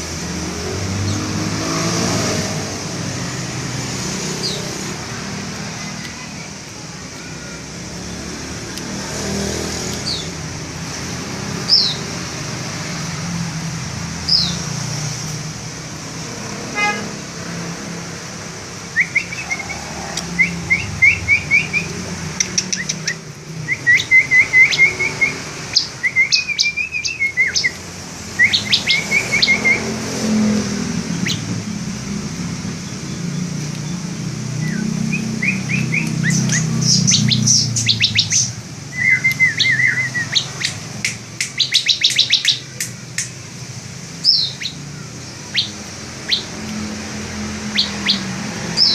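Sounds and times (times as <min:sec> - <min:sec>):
low traffic rumble: 0:00.0 - 0:48.9
bird calling sharp chirps: 0:11.4 - 0:12.2, 0:18.9 - 0:31.5, 0:32.8 - 0:43.4, 0:44.2 - 0:48.9.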